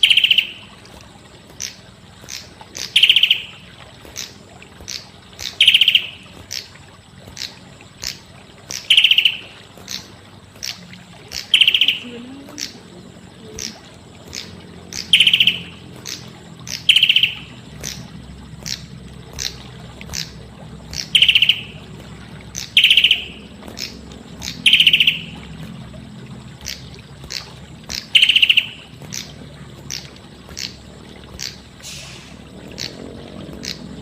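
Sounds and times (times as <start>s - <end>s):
bird loud rapid trill: 2.3s - 3.6s, 4.9s - 6.7s, 7.4s - 10.0s, 13.6s - 18.0s, 20.9s - 21.8s, 22.8s - 25.4s, 26.6s - 29.3s.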